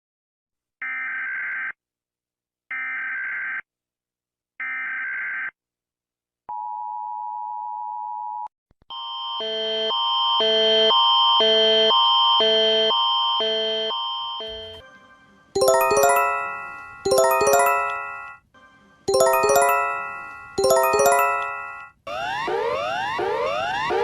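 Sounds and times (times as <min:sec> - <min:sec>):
alternating alarm tones: 0:15.6 - 0:18.4, 0:19.1 - 0:24.0.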